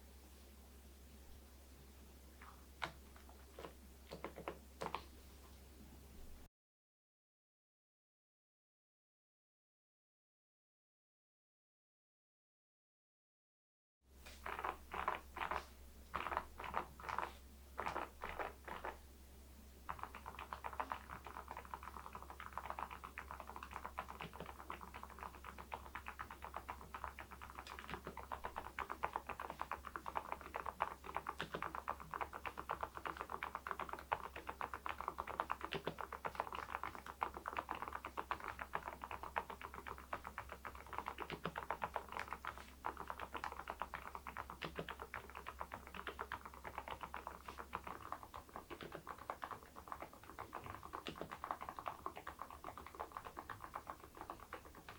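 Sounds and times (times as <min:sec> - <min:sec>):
fast mechanical keyboard typing: 0:19.9 - 0:54.9.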